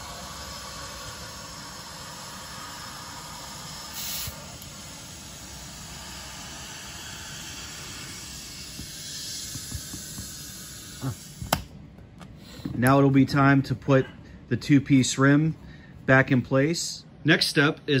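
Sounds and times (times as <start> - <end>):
compressed air hissing: 0.0 - 11.7.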